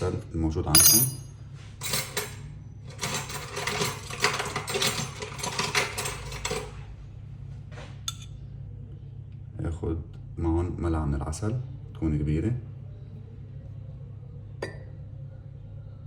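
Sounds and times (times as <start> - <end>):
steady low hum: 0.0 - 3.4, 6.8 - 16.0.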